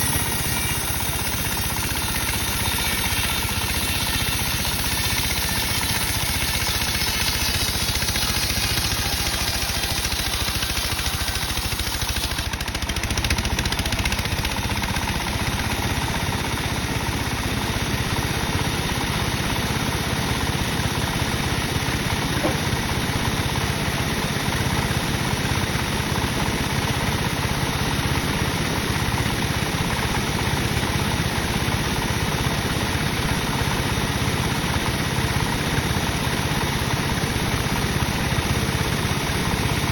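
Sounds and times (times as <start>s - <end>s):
sawmill machinery drone: 0.0s - 39.9s.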